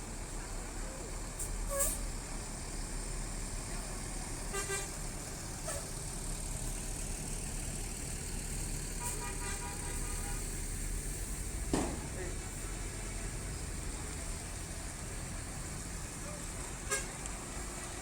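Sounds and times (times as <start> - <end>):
low engine rumble: 0.0 - 18.0
bus horn toots: 4.5 - 5.0, 9.0 - 10.5, 16.8 - 17.2.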